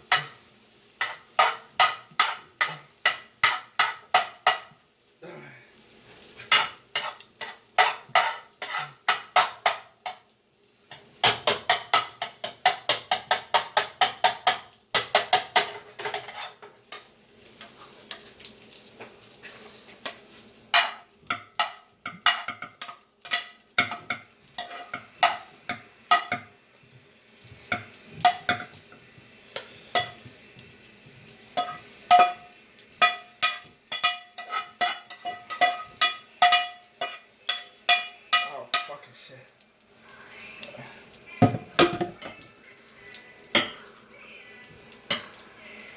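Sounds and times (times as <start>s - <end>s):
spoon knocking against frying pan: 0.0s - 0.4s, 1.0s - 4.8s, 6.5s - 10.3s, 10.9s - 17.1s, 20.7s - 26.6s, 27.6s - 30.4s, 31.6s - 39.0s, 41.4s - 42.4s
faint sizzle: 0.0s - 45.9s.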